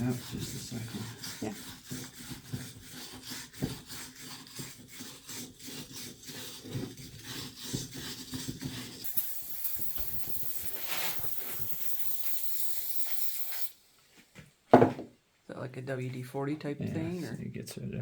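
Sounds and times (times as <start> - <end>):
aerosol spray hissing: 9.0 - 13.8
rhythmic rubbing strokes: 9.0 - 13.8.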